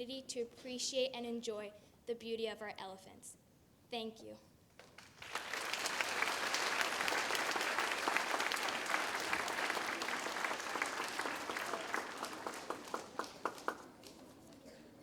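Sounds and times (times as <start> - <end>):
audience applauding: 4.8 - 14.7.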